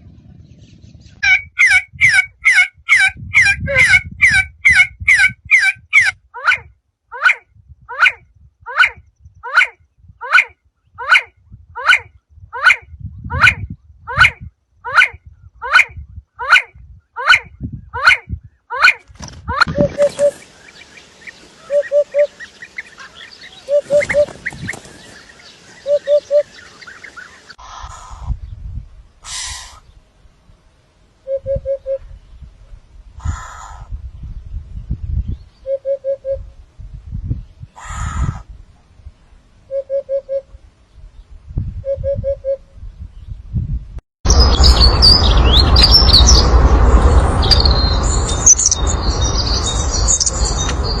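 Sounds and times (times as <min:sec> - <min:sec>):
chorus of high chirps: 0:19.6 - 0:27.7, 0:44.3 - 0:51.0
low rumble: 0:42.7 - 0:51.0.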